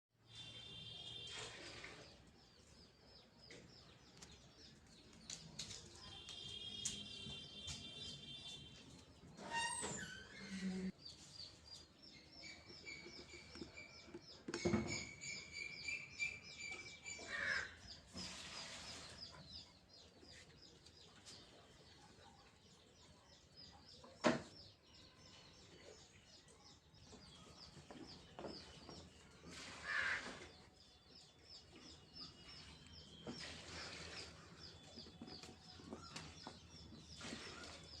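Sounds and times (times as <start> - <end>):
small birds chirping: 2.0 - 38.0.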